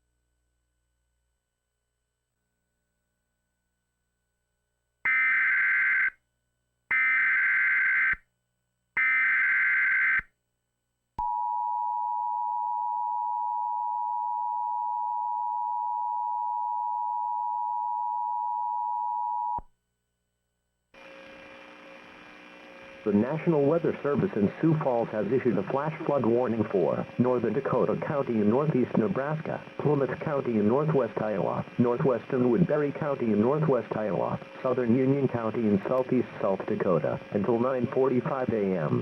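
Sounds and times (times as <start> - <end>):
two-tone alarm: 5.1 - 6.2, 6.9 - 8.2, 9.0 - 10.2
faint hum: 11.2 - 39.0.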